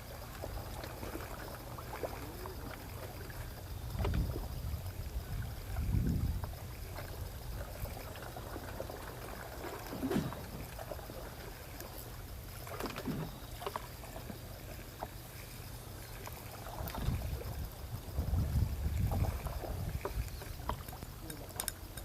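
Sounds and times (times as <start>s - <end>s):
sea water: 0.0s - 22.0s
wind: 0.0s - 22.0s
faint knocks and clicks: 20.0s - 22.0s.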